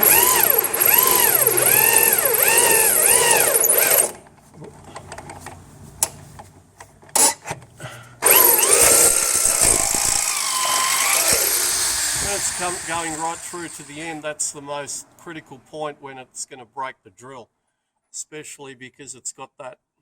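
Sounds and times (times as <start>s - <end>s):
electric drill whine: 0.0s - 4.2s, 8.2s - 14.2s.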